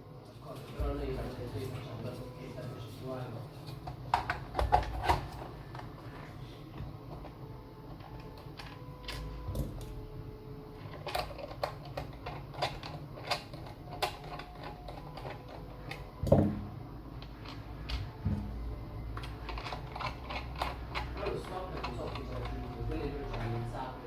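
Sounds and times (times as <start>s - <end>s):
heavy thump: 18.1s - 18.9s.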